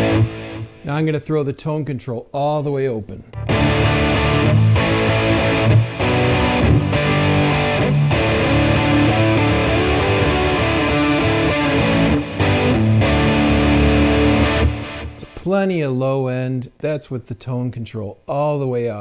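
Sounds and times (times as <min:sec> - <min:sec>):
overdriven electric guitar: 0:00.0 - 0:00.9, 0:03.3 - 0:15.4.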